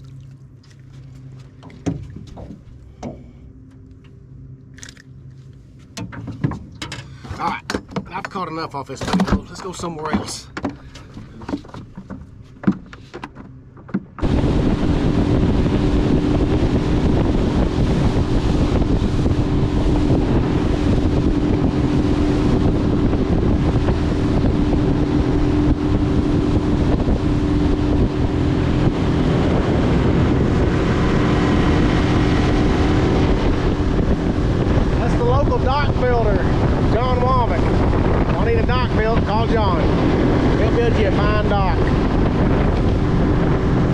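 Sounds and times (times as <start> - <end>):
boat motor drone: 0.0 - 43.9
knocks and clicks: 9.0 - 14.2
wind rushing over microphone: 14.1 - 43.9.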